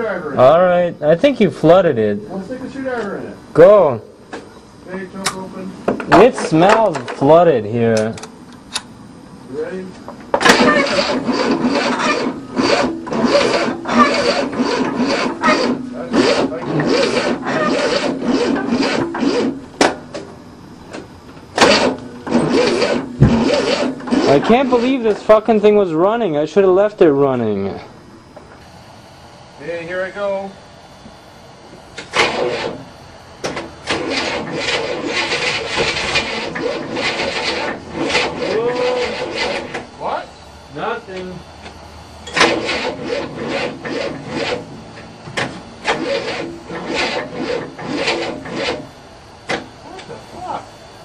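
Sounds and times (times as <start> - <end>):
starter motor cranking engine: 9.6 - 20.3, 20.9 - 25.9, 32.0 - 40.2, 42.2 - 50.6.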